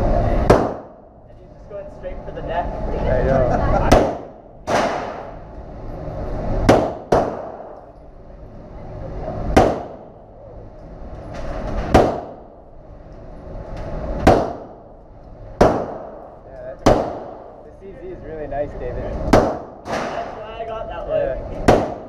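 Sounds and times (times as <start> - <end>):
gunshots with echo: 3.9 - 5.4, 6.6 - 7.8, 9.5 - 10.2, 11.9 - 12.5, 15.6 - 17.6, 21.6 - 22.0.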